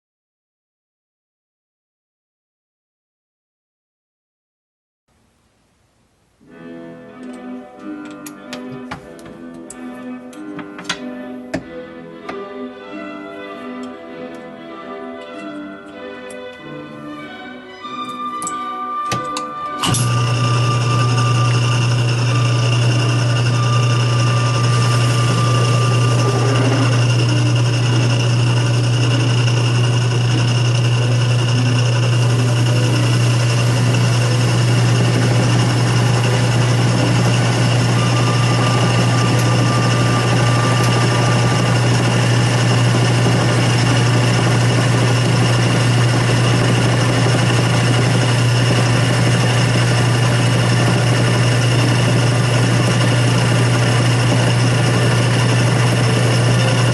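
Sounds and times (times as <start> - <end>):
thin high tone: 19.8 - 44.6
lathe motor humming: 19.8 - 56.9.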